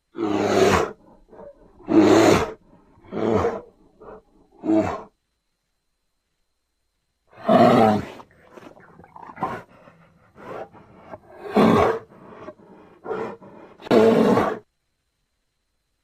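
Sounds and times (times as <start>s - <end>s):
bear growling: 0.1s - 5.1s, 7.3s - 14.7s
bear roaring: 0.1s - 5.1s, 7.3s - 14.7s.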